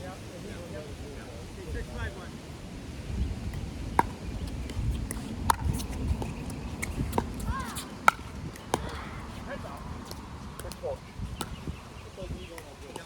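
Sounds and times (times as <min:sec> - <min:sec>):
wind rumble on microphone: 0:00.0 - 0:13.0
paddles hitting plastic ball: 0:04.0 - 0:09.0.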